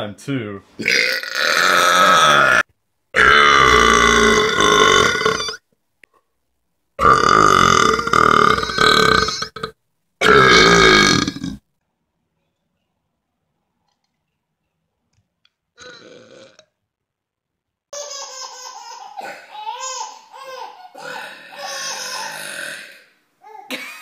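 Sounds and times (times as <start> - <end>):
person belching loudly: 0.8 - 2.6, 3.2 - 5.6, 7.0 - 11.6, 15.8 - 16.7, 22.2 - 23.0.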